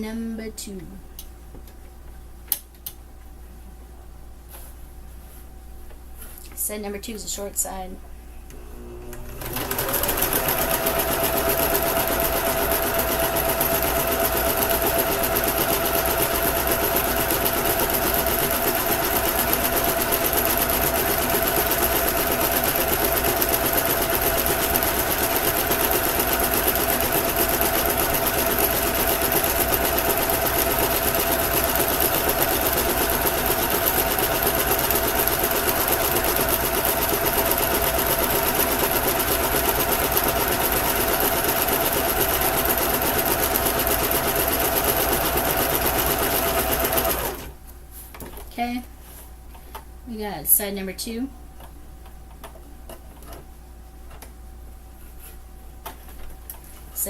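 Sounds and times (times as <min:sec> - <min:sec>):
sewing machine running with whine: 0:08.6 - 0:47.5.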